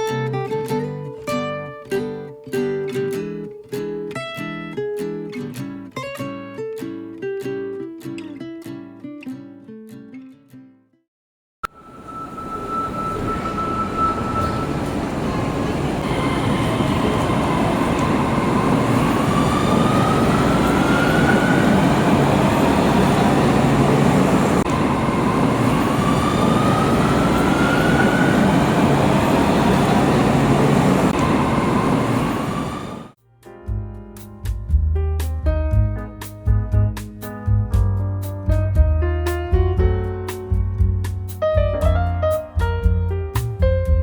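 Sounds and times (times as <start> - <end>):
train rumbling: 11.8 - 33.2.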